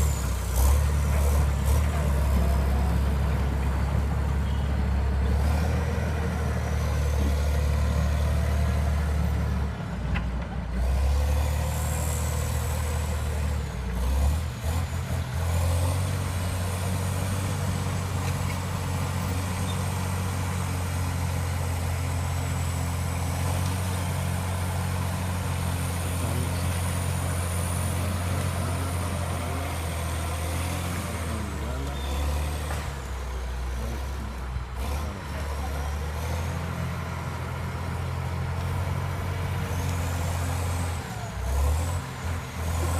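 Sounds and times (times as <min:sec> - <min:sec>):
bulldozer diesel engine droning: 0:00.0 - 0:42.9.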